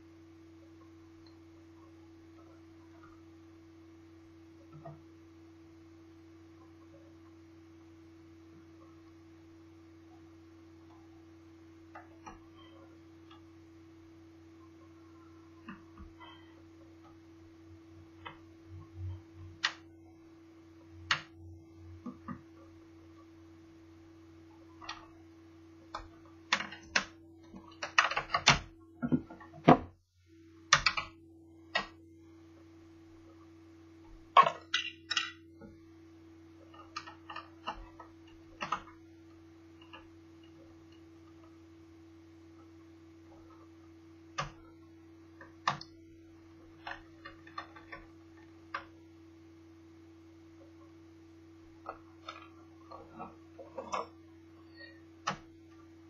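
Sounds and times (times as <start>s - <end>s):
electrical hum: 0.0s - 56.0s
clicks and taps of tools: 34.4s - 35.4s.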